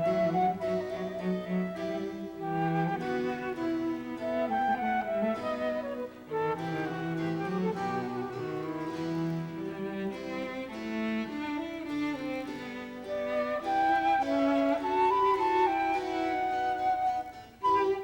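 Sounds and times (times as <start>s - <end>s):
bowed strings melody: 0.0s - 18.0s.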